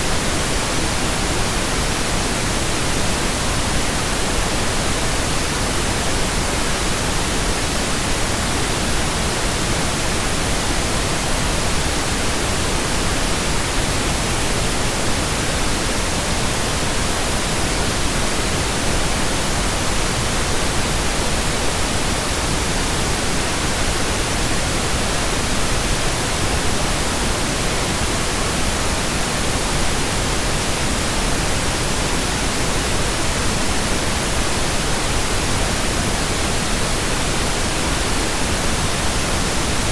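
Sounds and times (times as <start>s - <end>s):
pink noise hiss: 0.0s - 39.9s.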